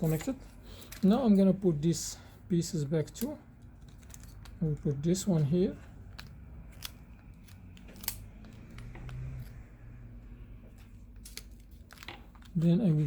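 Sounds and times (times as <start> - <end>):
small phone parts clicking: 3.1 - 9.6.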